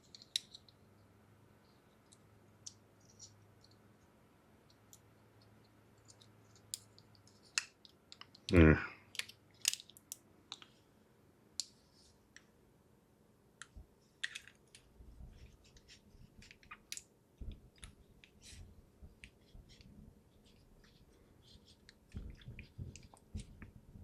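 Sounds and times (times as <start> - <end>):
soft handling noises: 13.6 - 24.0.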